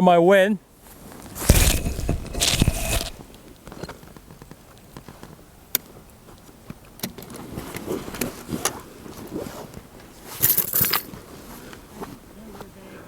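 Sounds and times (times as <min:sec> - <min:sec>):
rustling: 0:00.9 - 0:03.3.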